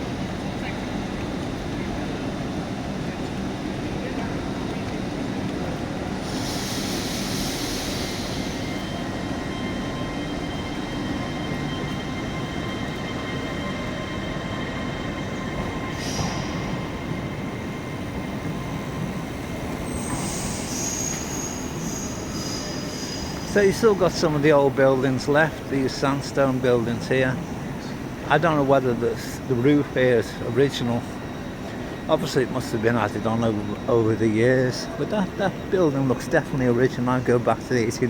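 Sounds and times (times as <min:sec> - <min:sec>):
train low rumble: 0:00.0 - 0:38.0
burst of hiss: 0:06.2 - 0:08.8
high wheel squeals: 0:06.2 - 0:28.0.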